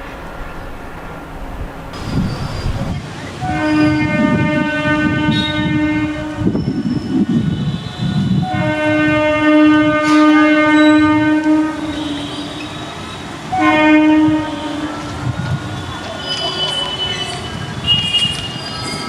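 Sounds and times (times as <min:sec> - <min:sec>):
train rumbling on track: 0:00.0 - 0:19.0
train horn blasts: 0:03.4 - 0:18.6.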